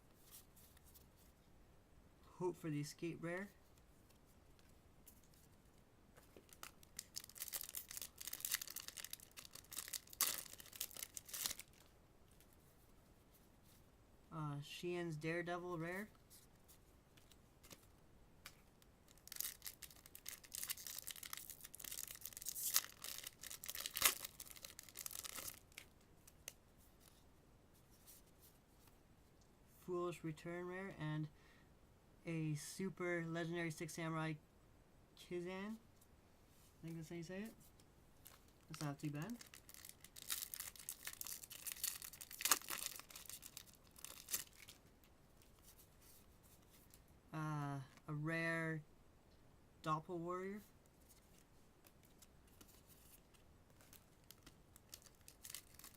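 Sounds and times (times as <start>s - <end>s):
foil wrapper tearing and crinkling: 6.5s - 11.8s, 19.1s - 25.9s, 38.2s - 44.9s, 53.8s - 55.9s.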